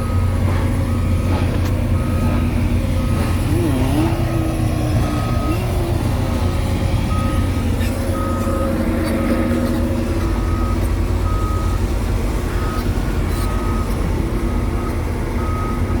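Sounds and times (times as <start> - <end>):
warning alarm beeps: 0.0 - 11.9, 12.6 - 16.0
diesel engine running: 0.0 - 16.0.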